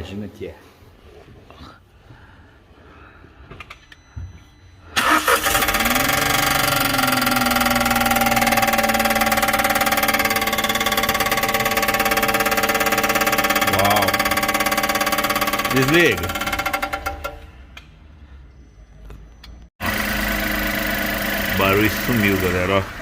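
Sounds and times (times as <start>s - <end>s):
car engine starting and idling: 5.0s - 17.9s, 19.8s - 23.0s.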